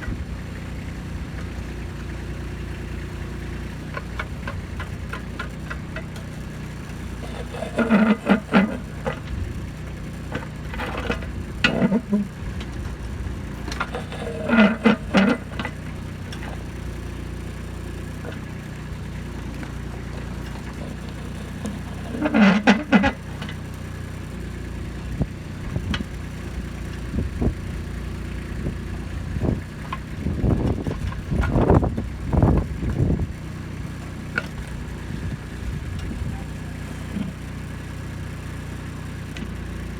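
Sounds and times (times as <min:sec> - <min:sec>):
tractor diesel engine running: 0:00.0 - 0:39.9
short loud engine bursts: 0:01.9 - 0:39.9
knocks and scrapes: 0:06.9 - 0:09.6, 0:10.2 - 0:17.2, 0:18.0 - 0:18.6, 0:19.2 - 0:23.6, 0:36.0 - 0:37.4.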